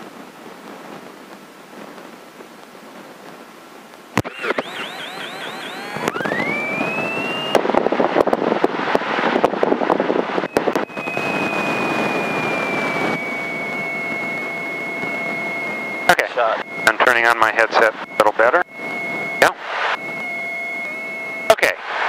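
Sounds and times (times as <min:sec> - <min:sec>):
steady high headset whine: 0:00.0 - 0:22.0
starter motor whine: 0:04.2 - 0:07.6
aircraft engine firing and running: 0:04.2 - 0:22.0.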